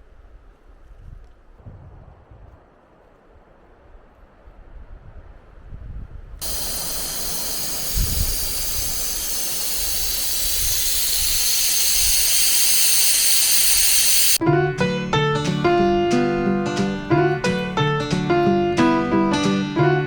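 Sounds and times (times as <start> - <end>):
faint low rumble: 0.0 - 6.4
loud steady hiss: 6.4 - 14.4
guitar and piano music: 14.4 - 20.0.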